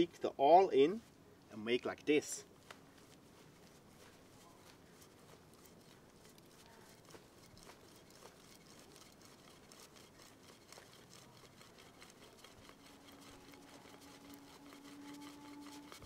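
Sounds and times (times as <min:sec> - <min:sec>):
knife awl scratching in wood: 0:04.9 - 0:16.0.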